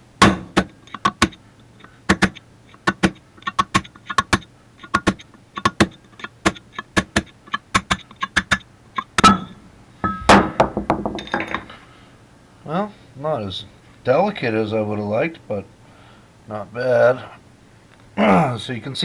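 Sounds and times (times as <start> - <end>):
hammer tapping steel punch: 0.2 - 11.8.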